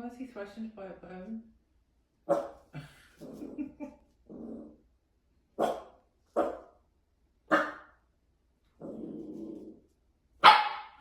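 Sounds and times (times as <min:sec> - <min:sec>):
dog barking: 0:02.3 - 0:02.6, 0:05.6 - 0:06.7, 0:07.5 - 0:08.0, 0:10.4 - 0:11.0
dog growling: 0:04.3 - 0:04.8, 0:08.8 - 0:09.8.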